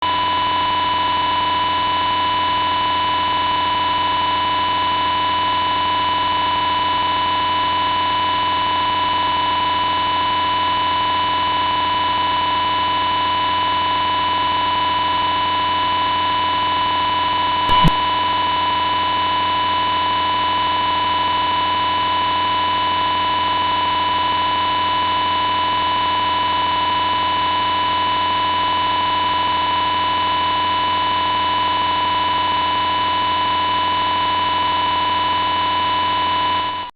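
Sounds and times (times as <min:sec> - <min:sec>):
brief click: 0:17.7 - 0:18.0.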